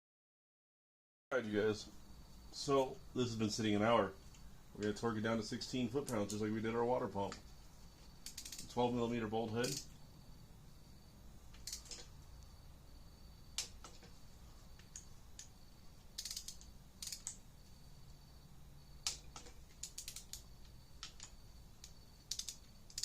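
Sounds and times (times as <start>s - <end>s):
ratcheting torque wrench clicks: 8.2s - 8.8s, 9.5s - 10.0s, 11.6s - 12.1s, 16.2s - 17.4s, 19.0s - 20.4s, 21.0s - 23.0s.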